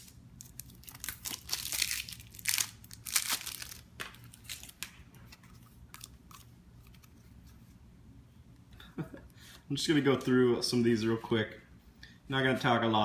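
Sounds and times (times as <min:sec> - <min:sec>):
card wrapper tearing and crinkling: 0:00.0 - 0:04.9.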